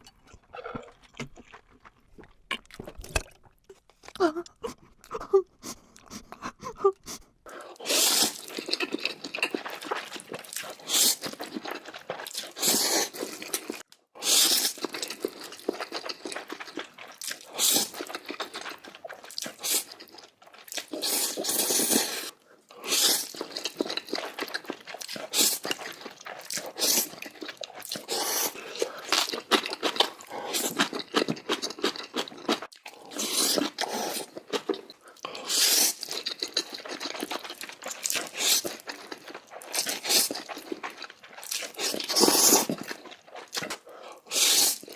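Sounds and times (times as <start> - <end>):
wet chewing: 0.0 - 44.9
noodle slurping: 7.7 - 44.9.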